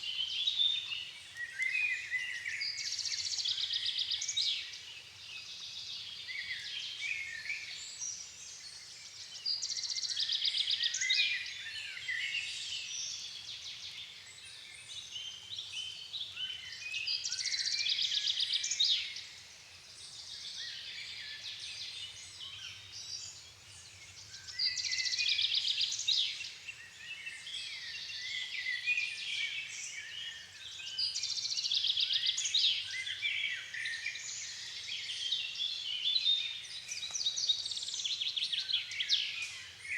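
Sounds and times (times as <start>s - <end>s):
songbirds singing: 0.0s - 39.9s
loud bird song phrase: 20.0s - 39.9s.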